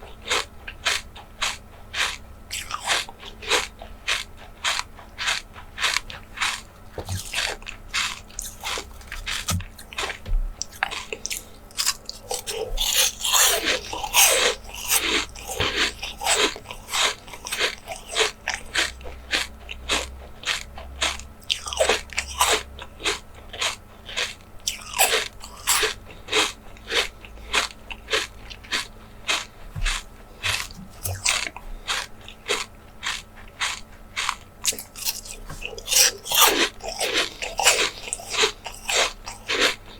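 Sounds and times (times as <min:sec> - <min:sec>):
crunching bites and chewing: 0:00.0 - 0:39.9.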